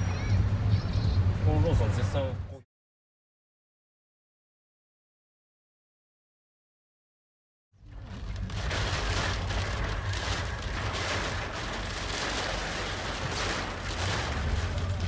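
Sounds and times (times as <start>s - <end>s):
wind-driven rain: 7.8s - 15.0s.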